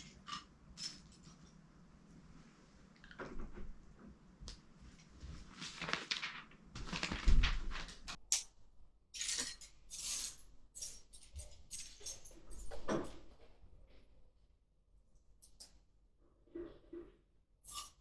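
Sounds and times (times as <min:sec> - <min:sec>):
plastic packaging crinkling: 0:05.6 - 0:08.2.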